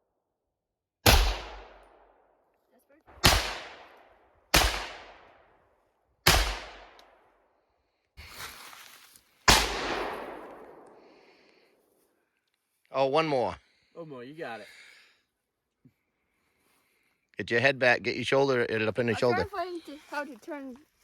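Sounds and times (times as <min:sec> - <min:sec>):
gunshots echoing: 0:01.0 - 0:02.1, 0:03.1 - 0:05.4, 0:06.2 - 0:07.1, 0:09.5 - 0:11.4.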